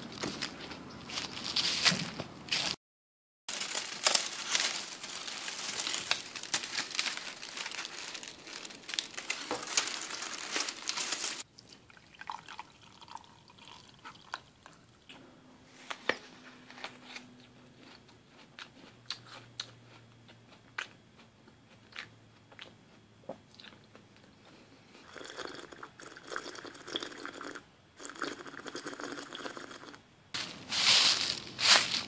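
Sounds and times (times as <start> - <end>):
close crunching: 3.5 - 11.5, 30.4 - 32.0.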